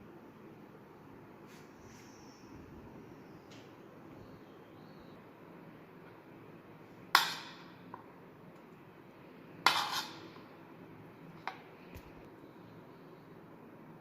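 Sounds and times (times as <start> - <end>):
utensils clinking against dish: 9.7 - 10.4.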